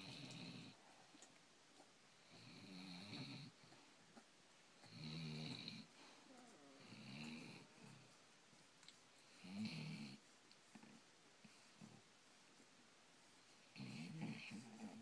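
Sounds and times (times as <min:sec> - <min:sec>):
dog snoring: 0:00.0 - 0:00.8, 0:02.2 - 0:03.7, 0:04.8 - 0:08.0, 0:09.3 - 0:10.2, 0:13.6 - 0:15.0.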